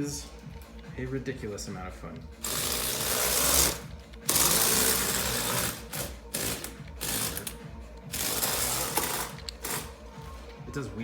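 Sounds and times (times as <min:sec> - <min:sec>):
small electric motors whirring: 0:02.4 - 0:10.0.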